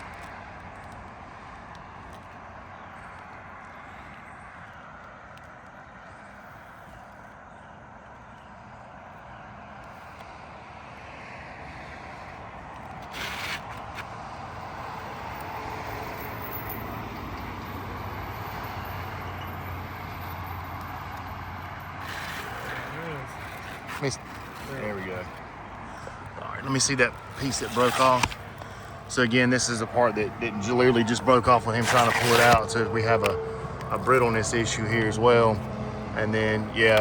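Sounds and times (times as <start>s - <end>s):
outdoor background noise: 0.0s - 37.0s
motor vehicle engine rumble: 11.5s - 37.0s.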